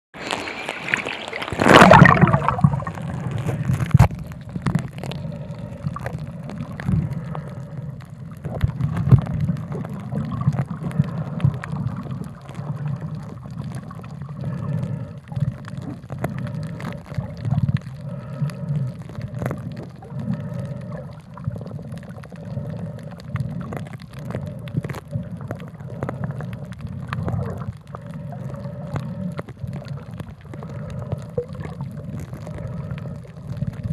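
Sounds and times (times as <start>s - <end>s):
loud water splash: 0.2s - 3.8s
water sloshing and gurgling: 0.2s - 33.9s.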